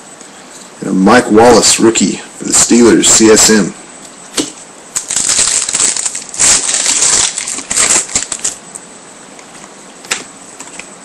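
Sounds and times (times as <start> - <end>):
plastic packaging crinkling: 4.9 - 8.9.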